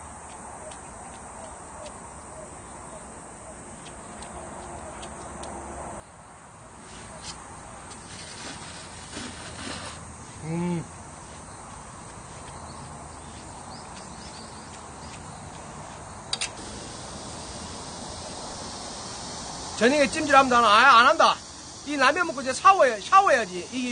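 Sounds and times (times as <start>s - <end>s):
outdoor background noise: 0.0s - 23.9s
man humming: 10.4s - 11.0s.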